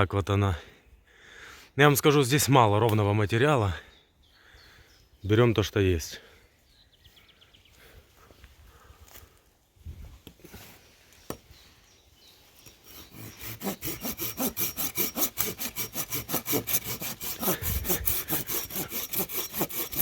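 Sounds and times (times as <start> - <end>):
hand saw cutting branch: 12.6 - 20.0.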